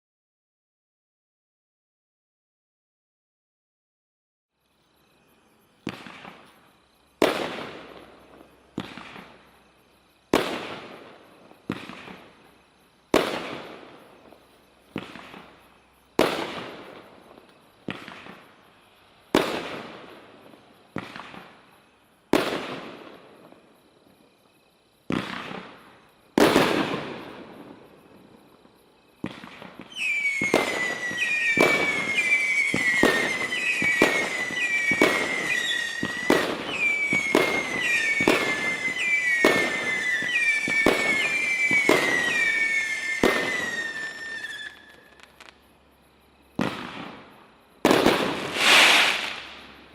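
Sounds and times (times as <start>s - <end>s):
falling firework whistles: 5.8s - 18.6s, 19.3s - 23.7s, 25.1s - 28.4s, 29.1s - 45.6s, 46.6s - 49.9s
firework crackling: 29.3s - 45.6s, 47.8s - 49.9s
firework aerial shots banging: 47.9s - 49.7s.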